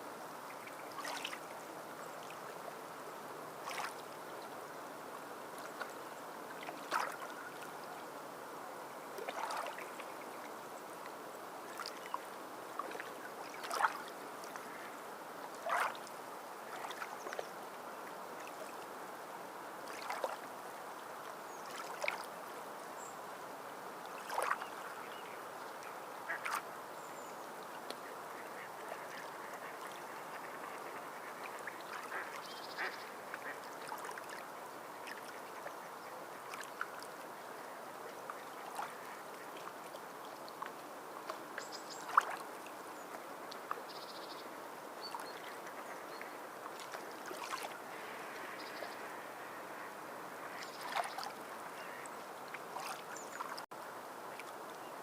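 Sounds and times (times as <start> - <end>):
sea water lapping: 0.6 - 1.4, 3.6 - 4.0, 6.6 - 7.7, 9.2 - 10.1, 11.7 - 15.0, 15.6 - 17.4, 19.8 - 20.5, 28.4 - 34.4, 42.0 - 42.5, 45.0 - 54.8
water splashes and slaps: 0.9 - 1.5, 3.6 - 4.1, 6.6 - 7.4, 9.2 - 10.1, 11.7 - 14.7, 15.6 - 17.5, 19.8 - 20.5, 21.7 - 22.3, 24.1 - 24.8, 26.3 - 26.6, 31.4 - 35.4, 38.6 - 42.6, 45.0 - 48.0, 50.5 - 53.8.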